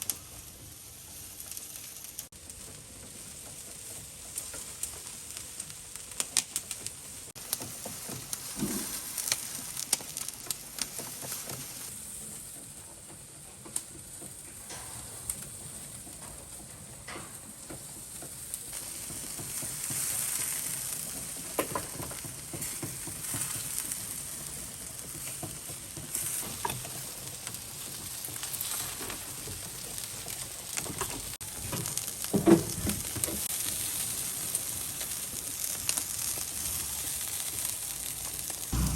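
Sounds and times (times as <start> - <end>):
crackles and clicks: 0.0 - 32.3, 32.9 - 38.9
meat sizzling: 3.1 - 12.0, 18.7 - 38.9.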